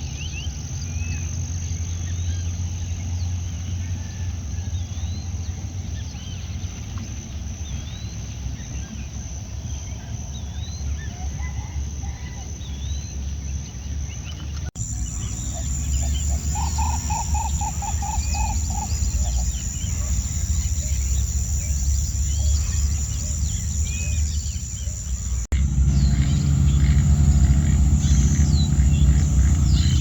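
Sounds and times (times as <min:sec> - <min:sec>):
birds chirping: 0:14.8 - 0:30.0
high insect drone: 0:14.8 - 0:30.0
low rumble: 0:14.8 - 0:30.0.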